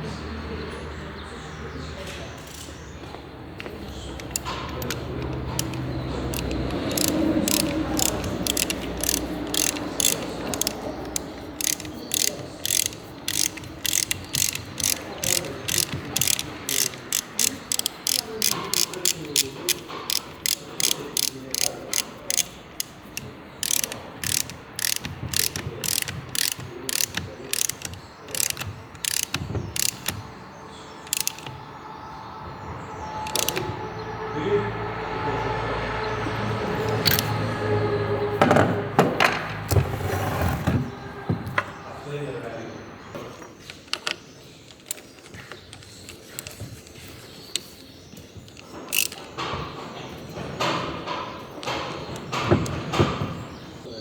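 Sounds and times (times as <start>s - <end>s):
ratchet wrench clicking: 3.6s - 30.3s, 31.0s - 31.6s, 33.2s - 33.7s, 36.8s - 37.4s, 44.7s - 47.8s, 48.5s - 49.3s.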